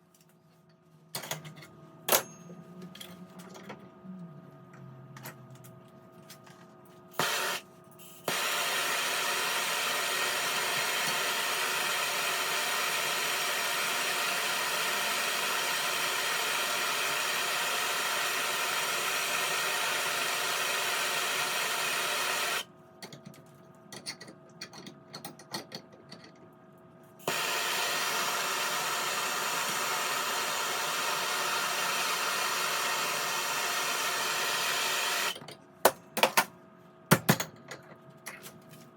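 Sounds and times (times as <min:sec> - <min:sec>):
gas torch hissing: 0:07.2 - 0:07.6, 0:08.3 - 0:22.6, 0:27.2 - 0:35.4.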